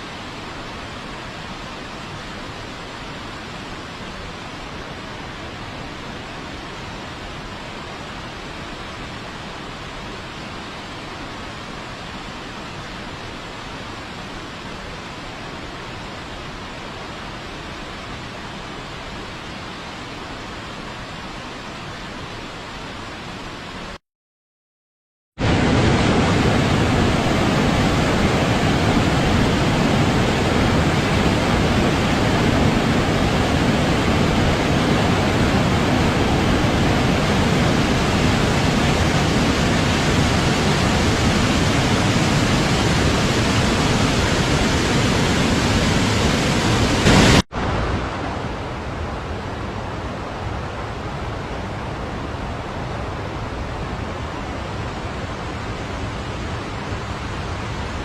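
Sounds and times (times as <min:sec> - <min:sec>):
waterfall rushing: 0:25.4 - 0:52.8.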